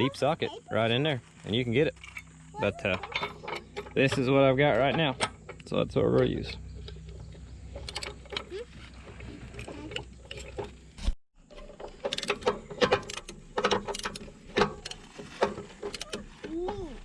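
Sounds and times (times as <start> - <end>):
wrench clicking on metal bolts: 12.0 - 15.1, 15.8 - 16.2.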